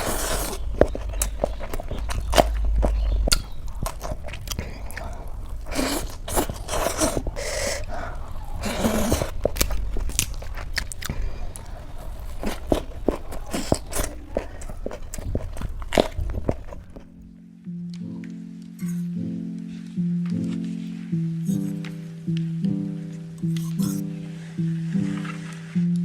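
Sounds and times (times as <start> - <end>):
wet chewing clicks: 0.0 - 17.3.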